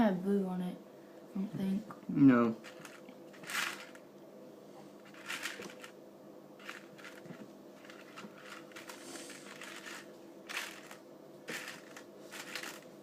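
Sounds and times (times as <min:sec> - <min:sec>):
jelly beans clicking and rustling: 0:02.6 - 0:04.0, 0:05.0 - 0:05.9, 0:06.6 - 0:13.0
packaging crinkling: 0:02.6 - 0:04.0, 0:05.0 - 0:05.9, 0:06.6 - 0:12.9.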